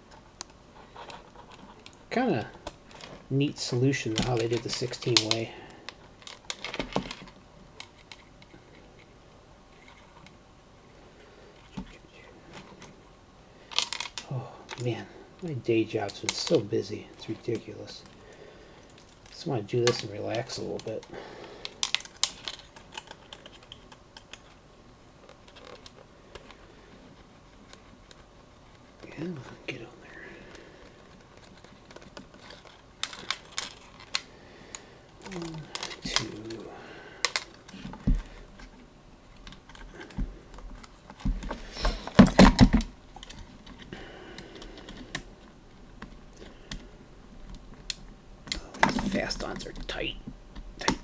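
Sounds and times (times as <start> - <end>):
plastic parts clicking: 13.7 - 14.9, 18.9 - 24.6, 30.8 - 36.6, 37.2 - 38.7.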